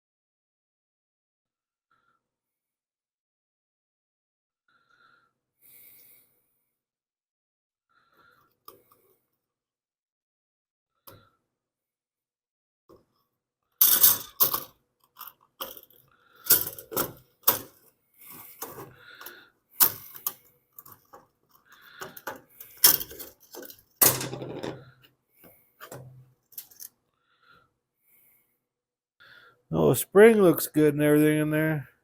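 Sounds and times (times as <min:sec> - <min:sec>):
plastic and metal parts clattering: 0:13.8 - 0:25.1, 0:25.8 - 0:26.9.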